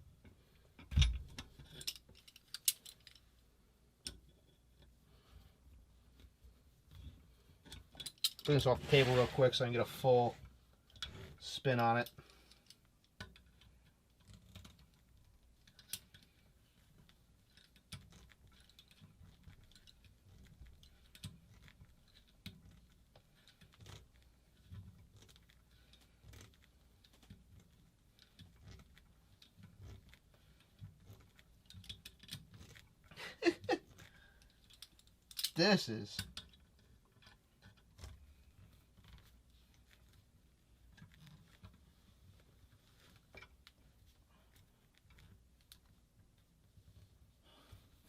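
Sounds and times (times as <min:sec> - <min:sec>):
metal parts clicking and tapping: 0:00.8 - 0:03.3, 0:07.6 - 0:08.5, 0:15.6 - 0:16.4, 0:17.4 - 0:24.1, 0:30.6 - 0:32.8, 0:34.0 - 0:35.6.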